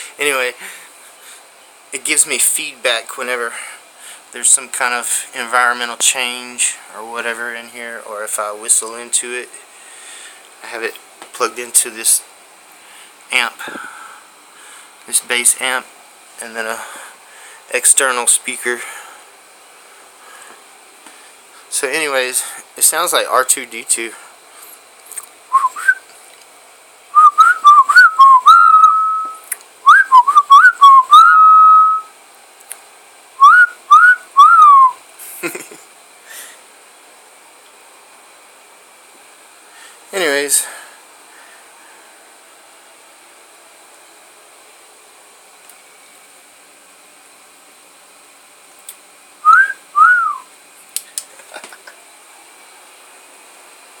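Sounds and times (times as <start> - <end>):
whistle-like electronic chirps: 27.2 - 32.1, 33.4 - 35.0.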